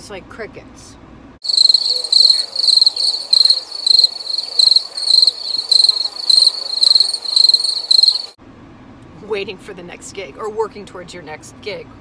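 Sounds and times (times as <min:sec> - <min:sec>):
crickets chirping: 0:01.4 - 0:08.4.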